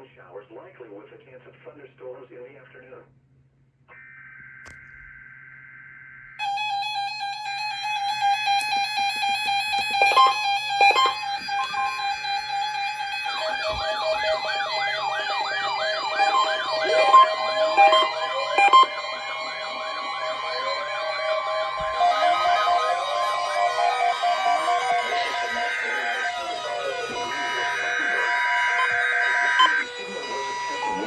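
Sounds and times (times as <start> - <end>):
siren-like wailing sweep: 5.6 - 31.0
synthesized electronic music: 6.4 - 31.0.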